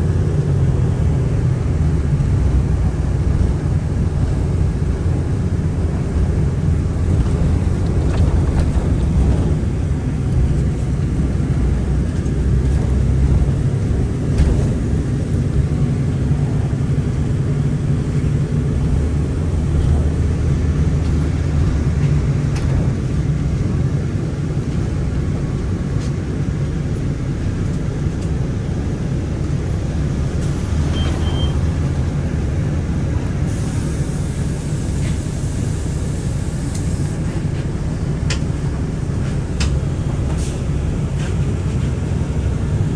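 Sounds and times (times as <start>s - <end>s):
bus engine and road rumble: 0.0s - 42.9s
high double beep: 30.9s - 31.6s.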